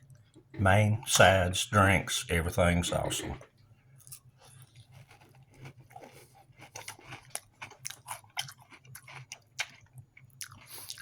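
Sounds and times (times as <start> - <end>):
person chewing food: 4.0 - 11.0.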